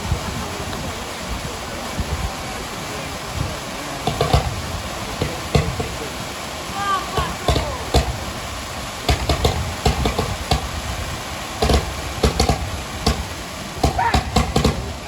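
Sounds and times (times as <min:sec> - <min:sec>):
background din: 0:04.0 - 0:06.2, 0:07.0 - 0:08.4, 0:09.0 - 0:10.8, 0:11.6 - 0:15.0
sharp bangs: 0:04.1 - 0:06.2, 0:07.2 - 0:08.4, 0:09.0 - 0:10.8, 0:11.6 - 0:15.0.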